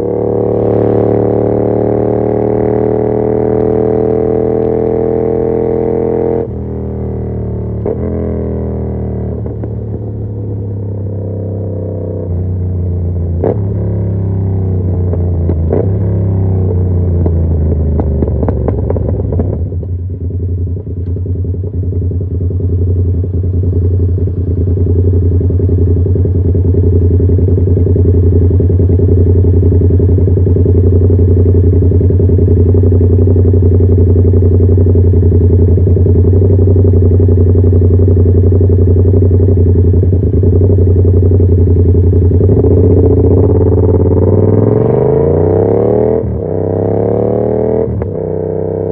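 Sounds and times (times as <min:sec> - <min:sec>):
motorcycle engine idling: 0:16.6 - 0:44.7.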